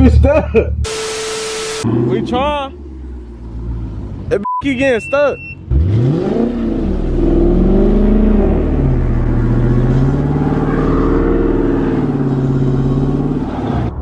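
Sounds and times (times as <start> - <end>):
car engine revving hard: 5.7 - 13.7.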